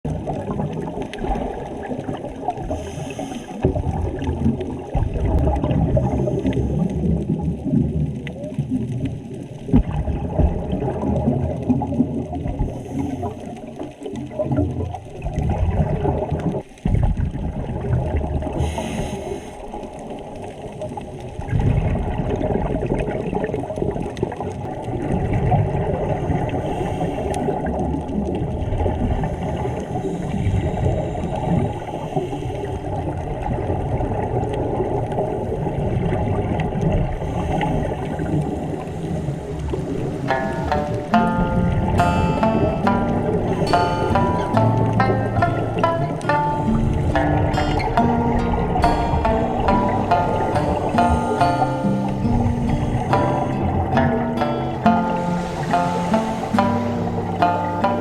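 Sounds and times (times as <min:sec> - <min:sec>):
underwater rumble: 0:00.0 - 0:57.6
humpback whale song: 0:37.6 - 0:58.0.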